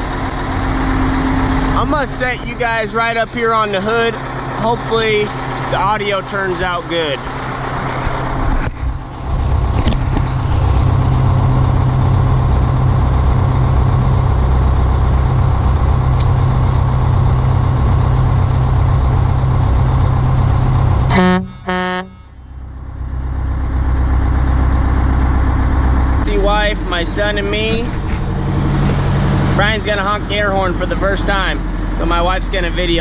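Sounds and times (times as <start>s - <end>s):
diesel engine idling: 0.0s - 33.0s
truck air horn blasts: 21.1s - 22.4s.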